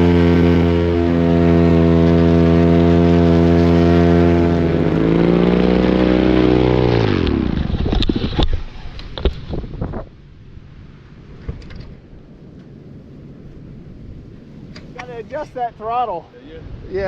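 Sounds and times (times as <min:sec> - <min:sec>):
paramotor engine running: 0:00.0 - 0:08.5
wind noise: 0:00.0 - 0:17.0.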